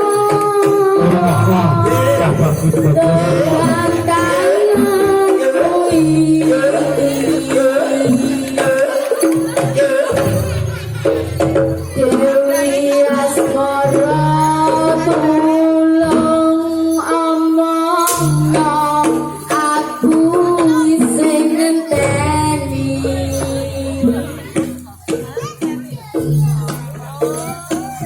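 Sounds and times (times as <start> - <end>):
drums beating: 0.0 - 28.0
person singing: 0.0 - 28.0
wavering melodic instrument: 0.0 - 28.0.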